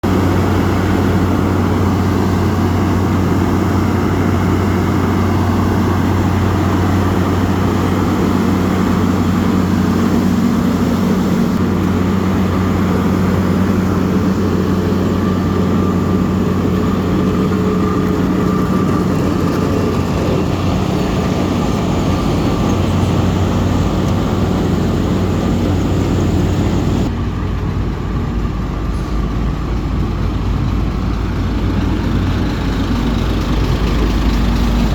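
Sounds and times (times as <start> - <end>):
road milling machine engine drone: 0.0 - 34.9.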